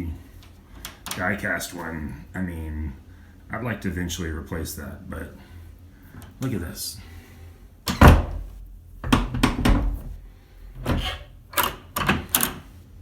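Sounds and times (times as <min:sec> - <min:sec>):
door shutting thunk: 0:07.9 - 0:10.2, 0:10.8 - 0:11.3
latch clicks and knocks: 0:07.9 - 0:10.2, 0:10.8 - 0:12.6.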